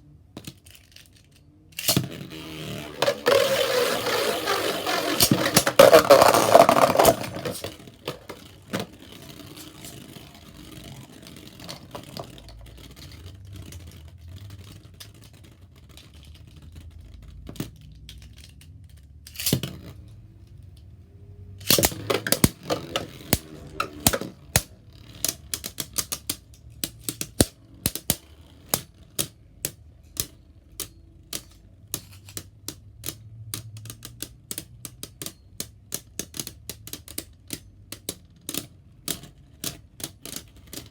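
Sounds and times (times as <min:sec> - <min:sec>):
spinning tops clashing: 0:01.8 - 0:08.8.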